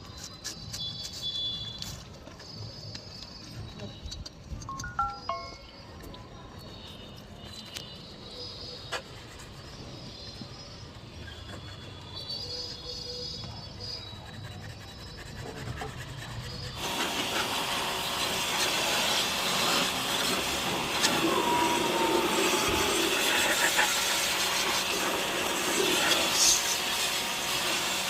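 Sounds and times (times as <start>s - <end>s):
pressure washer spraying: 16.8s - 28.0s.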